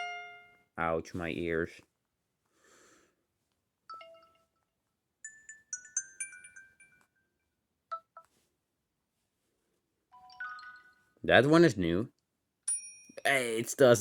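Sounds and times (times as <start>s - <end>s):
phone chime: 3.9s - 4.6s, 5.2s - 7.2s, 7.9s - 8.3s, 10.2s - 11.2s.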